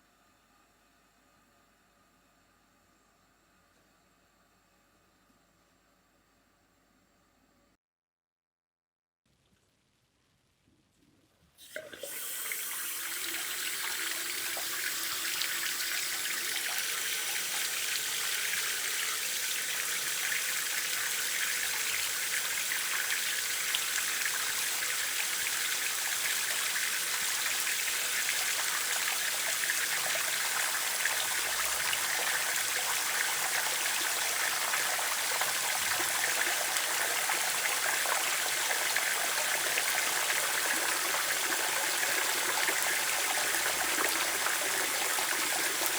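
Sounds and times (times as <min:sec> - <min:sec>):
water running from a tap: 0:11.6 - 0:45.9.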